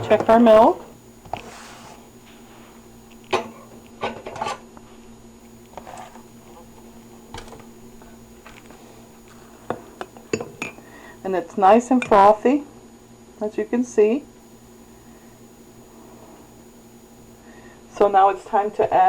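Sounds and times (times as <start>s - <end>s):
faint steady hum: 0.0s - 19.0s
cup knocks and clinks: 9.6s - 10.9s.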